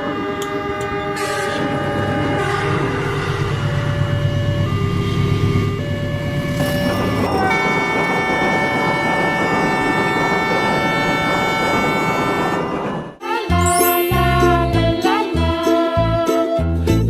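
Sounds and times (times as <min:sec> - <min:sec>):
train horn blast: 0:00.0 - 0:04.9, 0:07.2 - 0:13.2
train running noise: 0:00.0 - 0:14.9.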